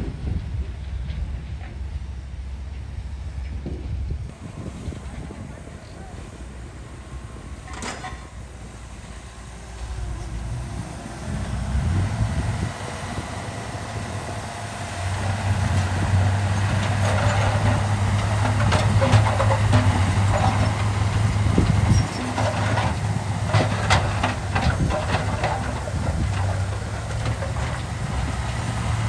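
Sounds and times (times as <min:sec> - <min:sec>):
bulldozer diesel engine running: 0:00.0 - 0:29.0
crawler tracks clanking and squeaking: 0:07.6 - 0:08.6, 0:15.1 - 0:29.0.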